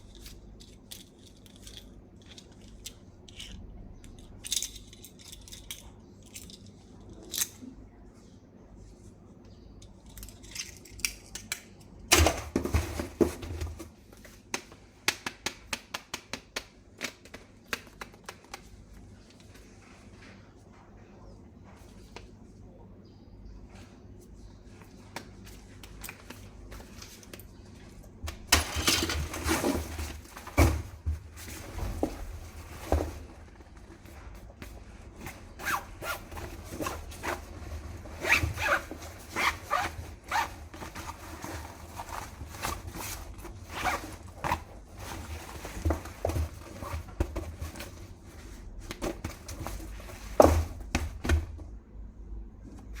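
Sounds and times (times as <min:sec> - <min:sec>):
rustling: 0:24.6 - 0:51.2.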